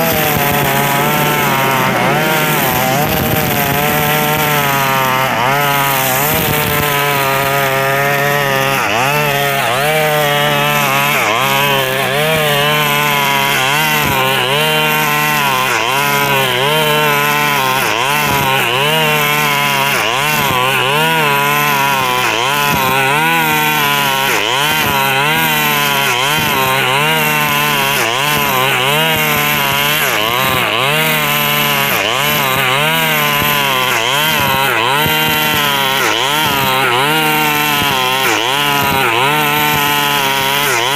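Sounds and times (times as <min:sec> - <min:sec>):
brush cutter engine running: 0:00.0 - 0:40.9.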